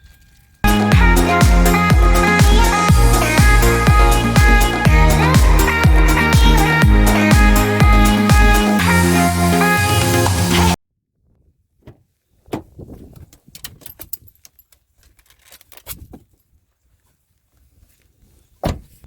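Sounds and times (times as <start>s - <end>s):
electronic music: 0.7s - 10.8s
small clicks and knocks: 13.2s - 16.0s.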